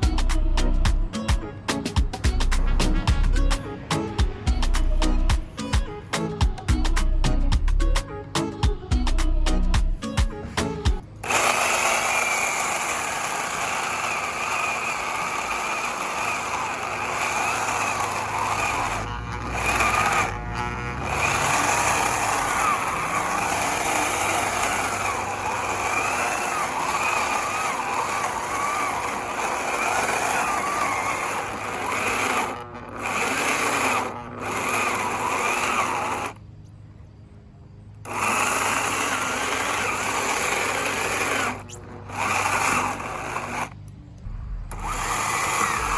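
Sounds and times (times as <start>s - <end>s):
electric chainsaw cutting wood: 0.0s - 0.3s, 10.4s - 36.4s, 38.0s - 44.0s, 44.7s - 45.9s.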